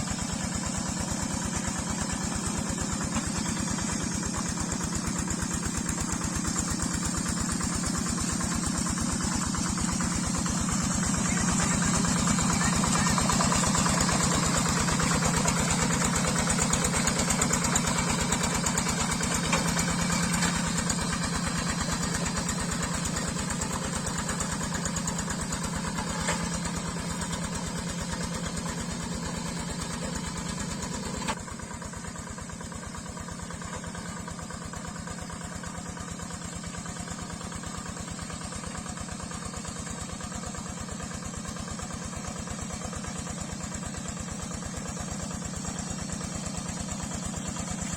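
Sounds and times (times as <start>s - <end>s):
diesel engine knocking: 0.0s - 47.9s.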